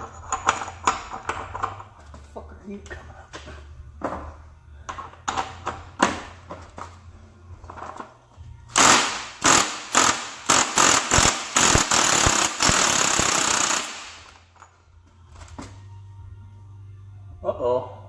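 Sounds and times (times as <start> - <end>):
impact wrench bursts: 8.7 - 14.5.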